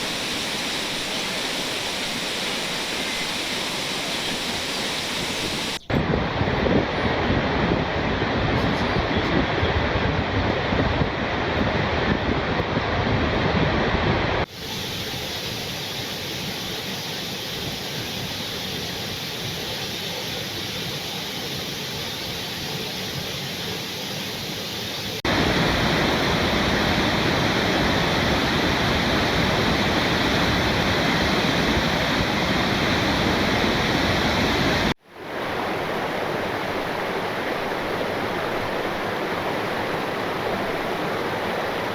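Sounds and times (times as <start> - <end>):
waterfall roaring: 0.0 - 12.6, 13.7 - 41.9.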